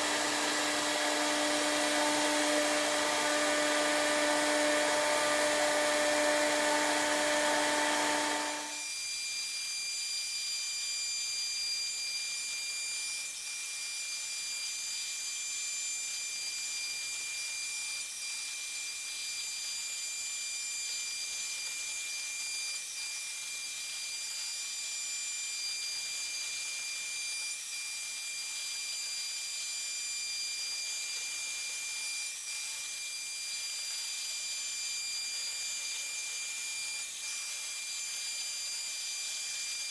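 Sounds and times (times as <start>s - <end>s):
router spindle whine: 0.0s - 8.8s.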